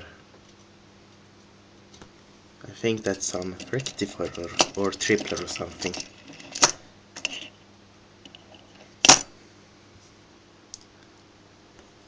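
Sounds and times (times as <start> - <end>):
small plastic and metal parts clicking: 3.1 - 7.5.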